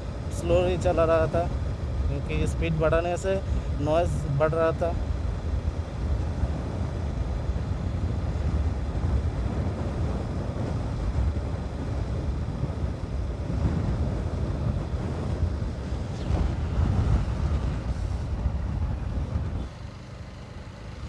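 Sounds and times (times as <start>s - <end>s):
wind buffeting microphone: 3.4s - 19.9s.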